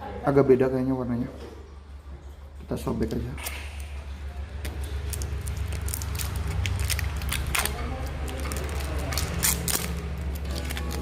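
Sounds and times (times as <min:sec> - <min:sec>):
packaging torn open: 0:04.7 - 0:11.0.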